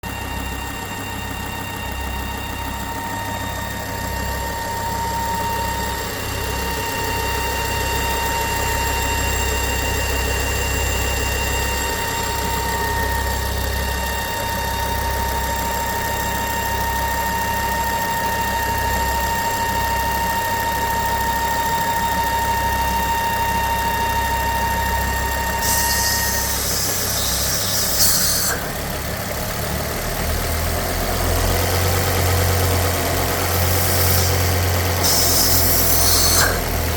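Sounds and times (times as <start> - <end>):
car engine idling with whine: 0.0 - 36.9
hiss: 25.6 - 28.7, 33.4 - 36.7.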